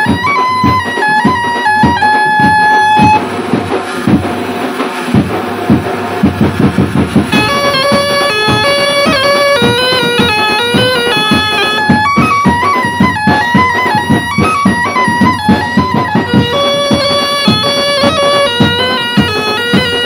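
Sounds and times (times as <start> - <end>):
steady drum beat: 0.0 - 20.0
melody line: 7.3 - 20.0.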